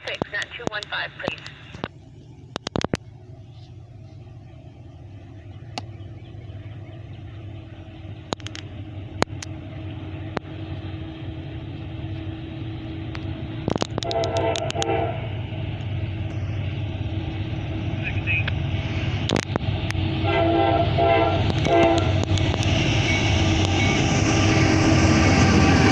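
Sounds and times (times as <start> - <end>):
sharp clicks: 0.0 - 1.9, 2.5 - 3.1, 8.2 - 9.6, 13.1 - 14.9, 21.4 - 23.9
diesel locomotive rumble: 0.0 - 25.9
train horn blast: 14.0 - 15.7, 20.1 - 25.9.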